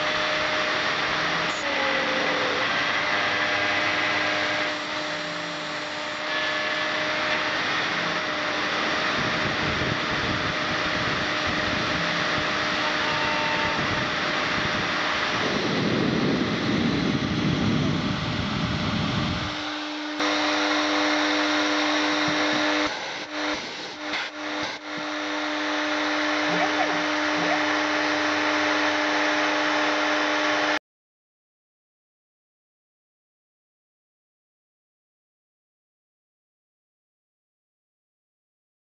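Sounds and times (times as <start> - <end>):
milling machine spindle whine: 0.0 - 30.8
loud rushing noise: 2.6 - 30.8.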